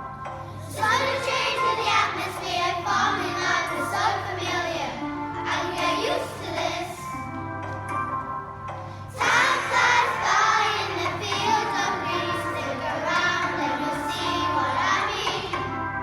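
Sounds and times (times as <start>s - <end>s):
instrumental backing: 0.0s - 16.0s
children singing worship song: 0.6s - 7.2s, 9.1s - 15.7s.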